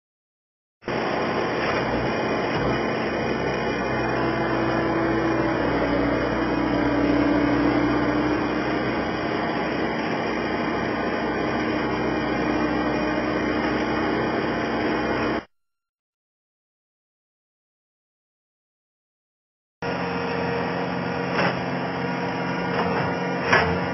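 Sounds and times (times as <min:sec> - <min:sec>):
loader engine running: 0:00.9 - 0:15.5, 0:19.8 - 0:23.9.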